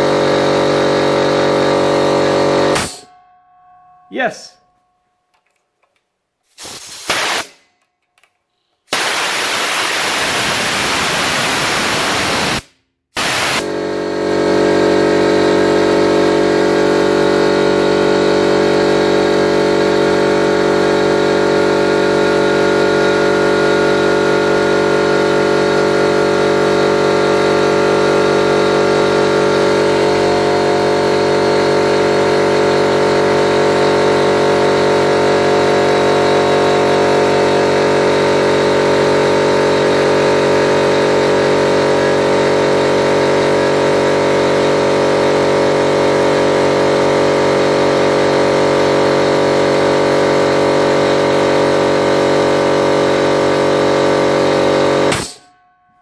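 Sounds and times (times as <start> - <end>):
air compressor motor humming: 0.0 - 3.3, 8.9 - 55.5
compressed air hissing: 6.5 - 7.6.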